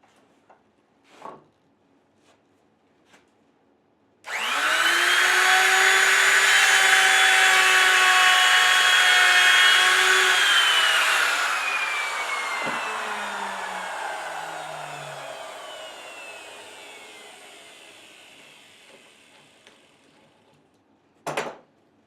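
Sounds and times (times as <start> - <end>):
falling whine of motor: 4.3 - 19.9
electric router motor running: 4.3 - 20.1.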